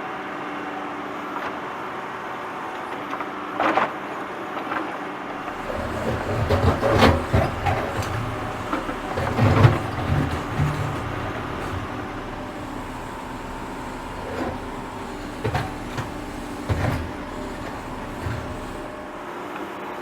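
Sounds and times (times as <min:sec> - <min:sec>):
tractor engine running: 0:05.4 - 0:19.2
heavy clunks of working gear: 0:05.5 - 0:19.2.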